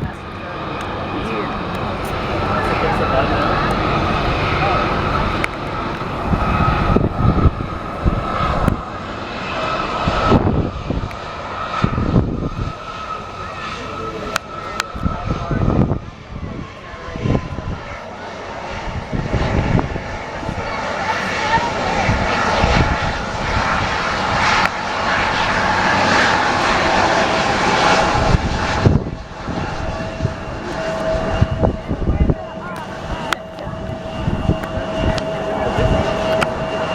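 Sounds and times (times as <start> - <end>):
airplane engine whine: 0.0 - 36.9
wind buffeting microphone: 0.0 - 36.9.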